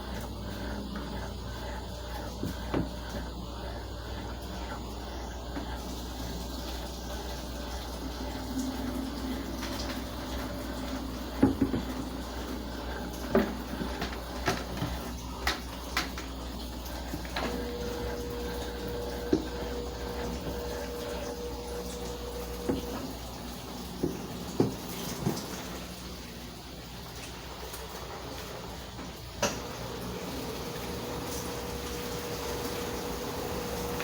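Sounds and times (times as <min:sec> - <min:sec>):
water splashing in washing machine: 0:00.0 - 0:34.0.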